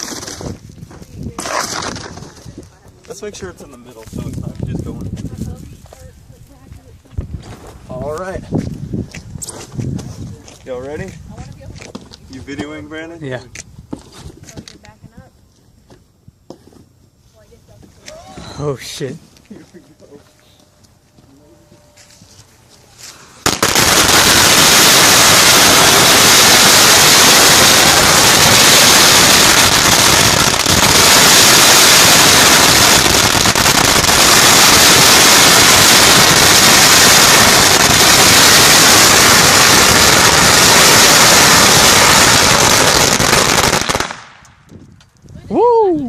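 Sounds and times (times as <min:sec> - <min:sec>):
firecrackers crackling: 0:00.0 - 0:03.2, 0:23.0 - 0:45.4.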